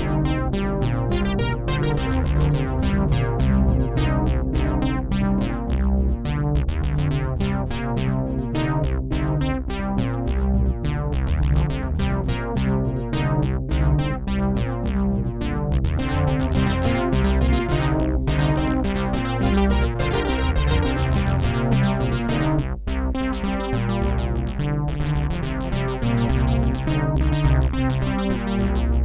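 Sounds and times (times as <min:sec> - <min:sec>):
synthesizer notes through tape delay: 0:00.0 - 0:29.0.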